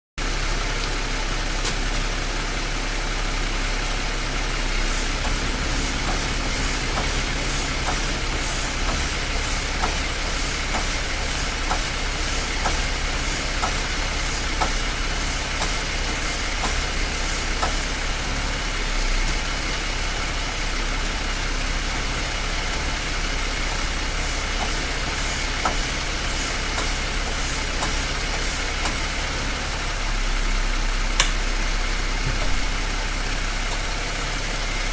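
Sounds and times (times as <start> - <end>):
car engine idling: 0.2 - 34.9
power steering clunking: 4.3 - 18.6, 23.7 - 29.7, 30.8 - 34.1.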